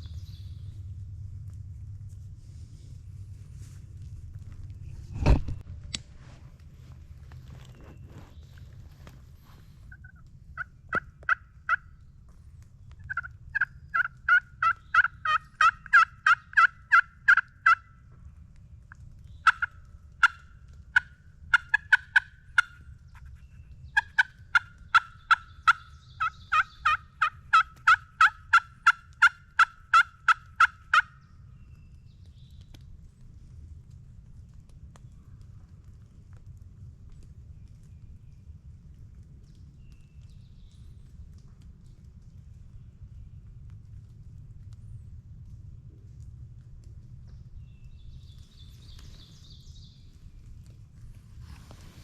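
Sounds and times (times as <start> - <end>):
turkey call yelps: 13.1 - 17.9, 19.4 - 20.4, 21.0 - 22.8, 24.0 - 31.1.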